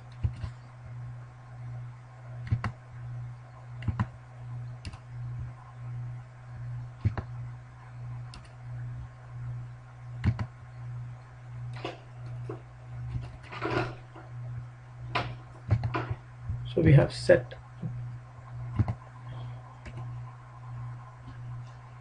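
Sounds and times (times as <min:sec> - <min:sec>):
pulsing low hum: 0:00.0 - 0:22.0
computer keyboard key presses: 0:02.4 - 0:02.8, 0:03.8 - 0:04.1, 0:10.2 - 0:10.5.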